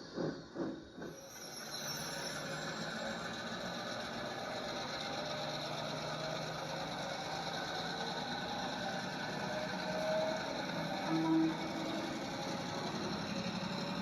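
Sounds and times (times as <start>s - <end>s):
locomotive engine running: 3.0s - 14.0s.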